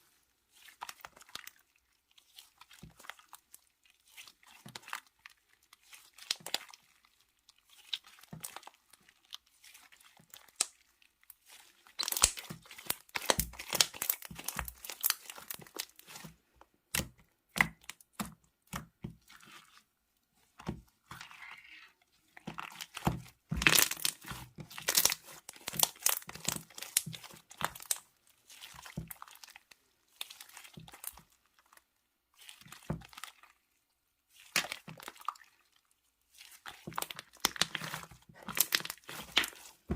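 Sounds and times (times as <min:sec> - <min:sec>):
slime squeezed crackling: 0:02.3 - 0:19.8, 0:21.0 - 0:31.8, 0:36.3 - 0:39.9.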